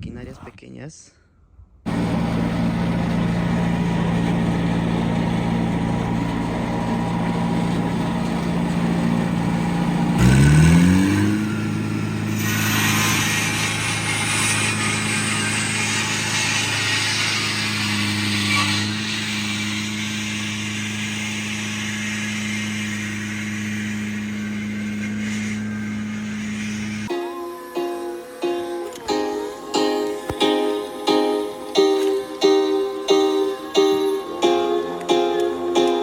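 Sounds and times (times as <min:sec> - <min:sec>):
small engine running and revving: 0:01.9 - 0:27.1
hiss: 0:12.2 - 0:27.1.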